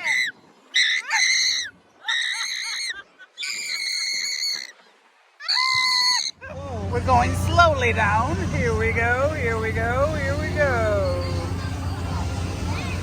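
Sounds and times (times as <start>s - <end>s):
riders screaming: 0.0s - 4.8s.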